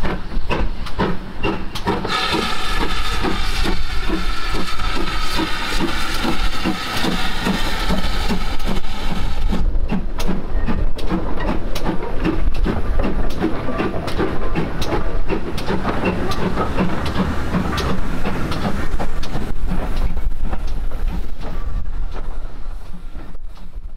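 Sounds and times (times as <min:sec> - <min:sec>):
rhythmic knocks of train wheels: 0:00.0 - 0:23.9
train running on tracks: 0:00.0 - 0:23.9.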